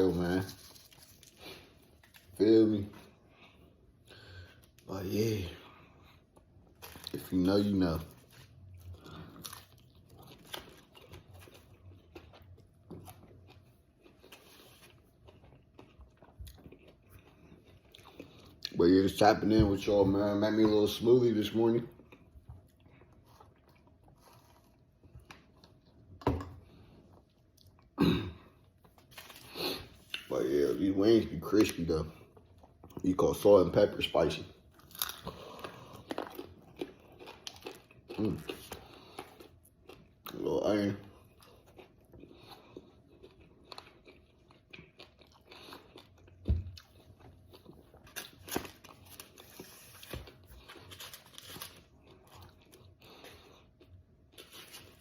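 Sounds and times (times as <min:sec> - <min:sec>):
chewing crispy chicken: 0:00.0 - 0:19.2, 0:28.6 - 0:55.0.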